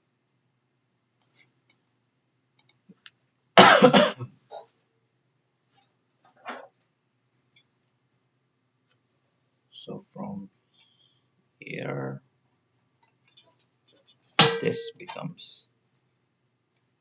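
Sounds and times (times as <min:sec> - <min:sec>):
person coughing: 0:03.6 - 0:04.7.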